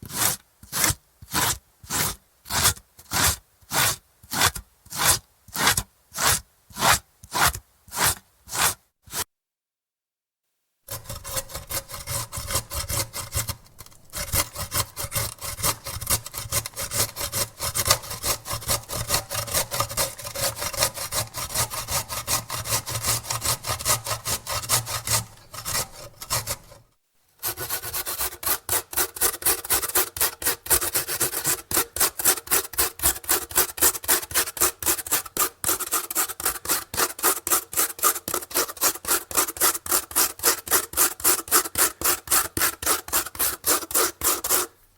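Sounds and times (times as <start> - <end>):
carrot grated on metal grater: 10.9 - 26.8, 27.4 - 44.8.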